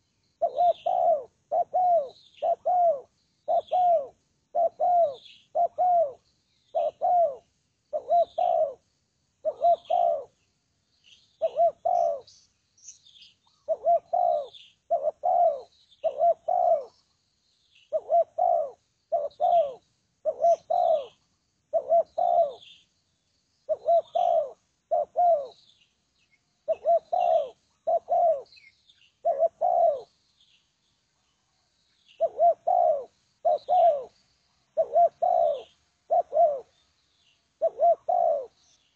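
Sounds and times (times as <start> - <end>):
dove cooing: 0.0 - 10.4, 11.4 - 12.3, 13.5 - 17.0, 17.9 - 22.8, 23.7 - 25.7, 26.6 - 30.2, 32.2 - 36.8, 37.6 - 38.8.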